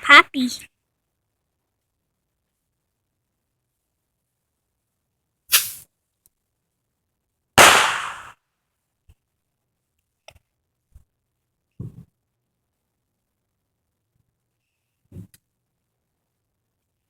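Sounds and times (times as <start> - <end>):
fireworks bangs: 5.5 - 5.8, 7.6 - 8.3.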